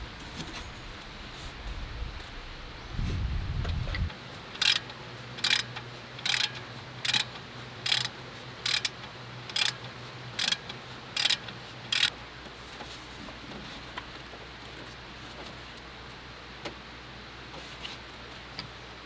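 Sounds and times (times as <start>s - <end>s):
ratchet wrench clicking: 4.6s - 9.8s, 10.4s - 10.6s, 11.2s - 12.1s.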